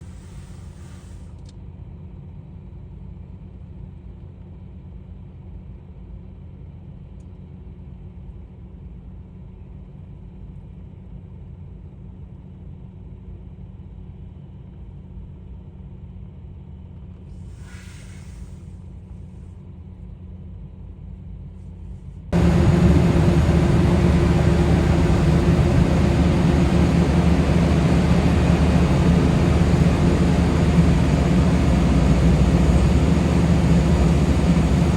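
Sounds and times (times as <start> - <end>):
brief hisses: 17.5 - 18.7
jet engines roaring: 22.4 - 34.9
low rumble: 22.4 - 34.9.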